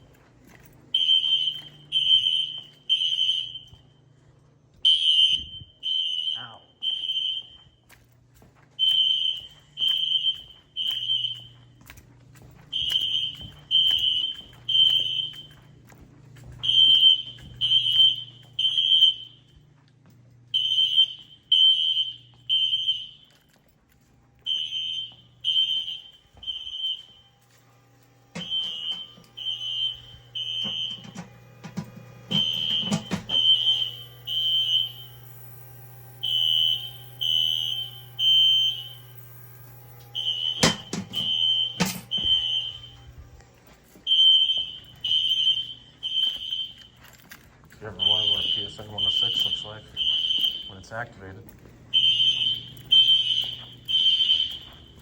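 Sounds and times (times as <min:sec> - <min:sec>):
fire alarm beeping: 0:00.0 - 0:55.0
low hum: 0:07.0 - 0:55.0.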